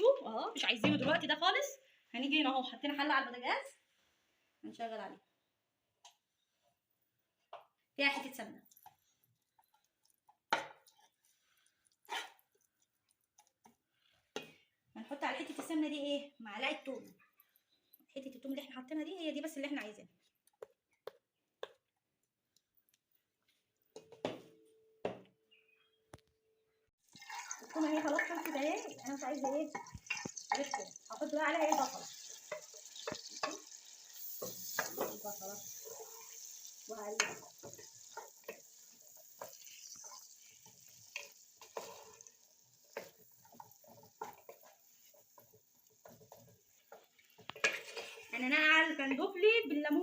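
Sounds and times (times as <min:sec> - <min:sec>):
onion sizzling in a pot: 0:27.0 - 0:50.0
spoon scraping and clicking: 0:43.0 - 0:48.4.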